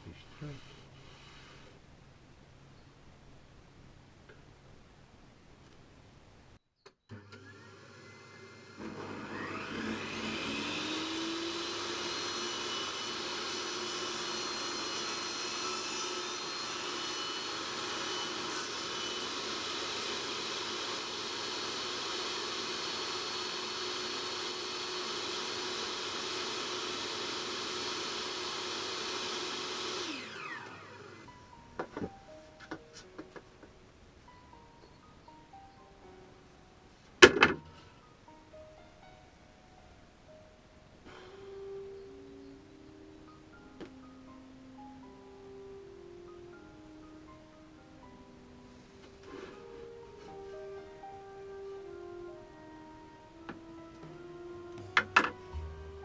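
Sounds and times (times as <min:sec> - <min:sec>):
table saw motor whine: 0:07.1 - 0:31.4, 0:53.9 - 0:56.0.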